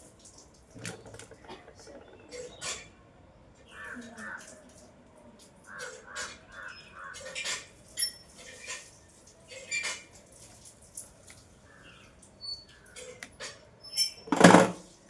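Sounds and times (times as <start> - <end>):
crow cawing: 5.7 - 7.2
small metal tools clattering: 13.9 - 14.9.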